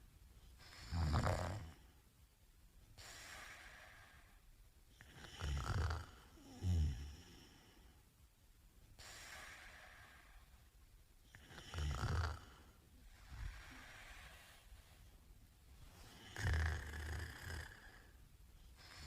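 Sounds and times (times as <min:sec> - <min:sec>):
man snoring: 0:00.7 - 0:01.8, 0:05.0 - 0:07.6, 0:11.3 - 0:12.7, 0:16.1 - 0:18.1
soft breath: 0:02.9 - 0:05.1, 0:08.9 - 0:10.8, 0:11.4 - 0:19.0.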